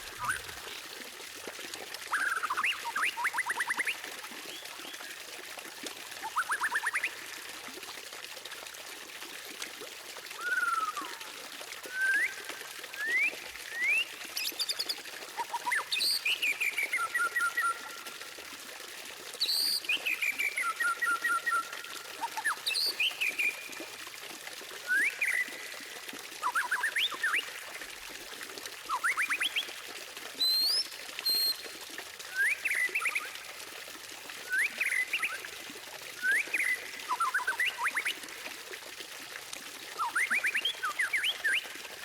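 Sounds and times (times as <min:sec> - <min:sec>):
songbird whistling and trilling: 0:10.4 - 0:11.2, 0:13.0 - 0:14.9, 0:15.6 - 0:17.9, 0:22.4 - 0:23.7, 0:24.9 - 0:25.6, 0:30.4 - 0:31.6, 0:36.2 - 0:38.2, 0:40.0 - 0:41.7.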